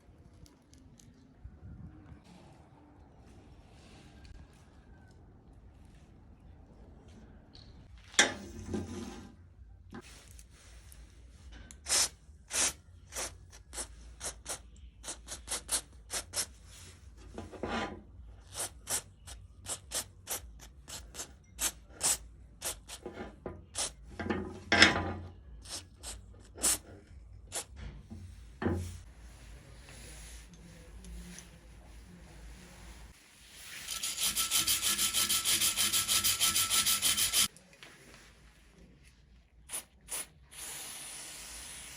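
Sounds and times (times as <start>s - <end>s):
hand tool scraping steel pliers: 33.9s - 37.5s.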